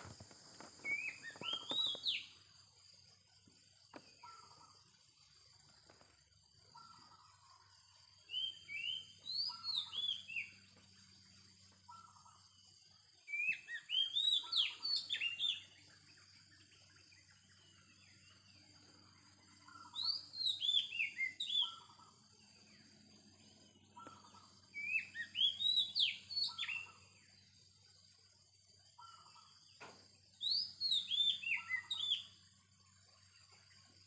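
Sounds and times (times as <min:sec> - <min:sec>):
bird whistling song: 0:00.7 - 0:02.5, 0:08.2 - 0:10.8, 0:13.2 - 0:16.0, 0:19.5 - 0:22.2, 0:23.9 - 0:27.2, 0:30.3 - 0:32.6.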